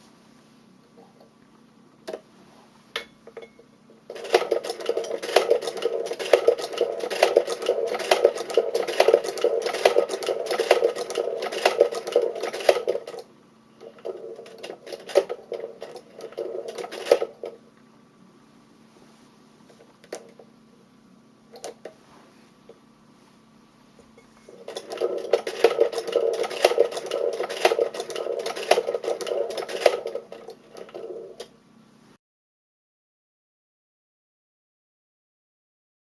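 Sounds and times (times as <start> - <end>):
sewing machine clattering: 4.1 - 17.6, 24.5 - 31.5.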